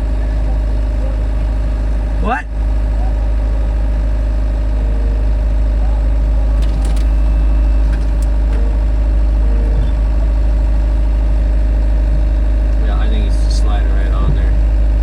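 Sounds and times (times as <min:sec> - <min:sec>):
tractor engine idling: 0:00.0 - 0:15.0.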